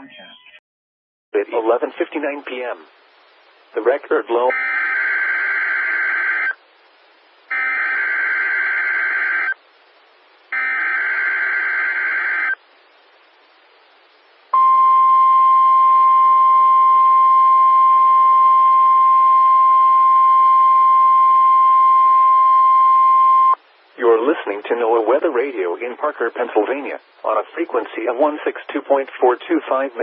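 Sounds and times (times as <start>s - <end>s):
steady warning alarm tone: 4.5s - 6.6s, 7.5s - 9.6s, 10.5s - 12.6s.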